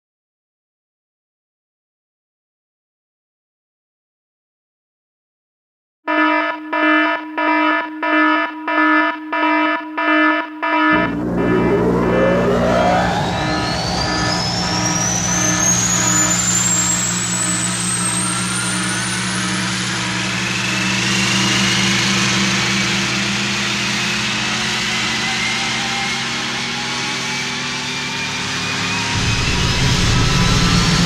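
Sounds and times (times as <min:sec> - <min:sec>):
whines rising in pitch: 0:06.3 - 0:31.0
low spaceship engine drone: 0:07.2 - 0:31.0.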